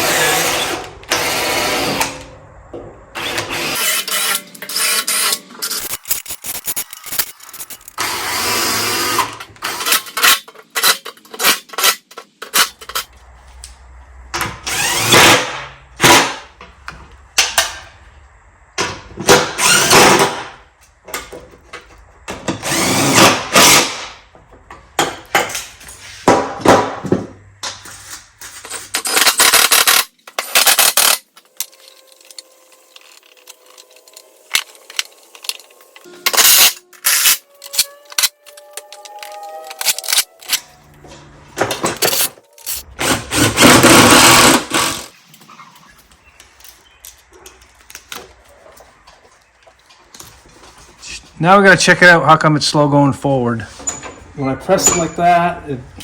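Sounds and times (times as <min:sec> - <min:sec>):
power drill whirring: 0:00.0 - 0:02.2, 0:22.6 - 0:23.8, 0:43.0 - 0:45.1.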